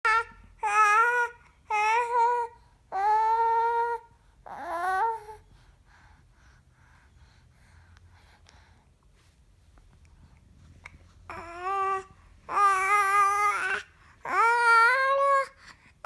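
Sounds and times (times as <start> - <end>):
baby making high-pitched vocal noises: 0.0 - 5.4, 11.3 - 15.6
baby babbling softly: 10.8 - 15.9.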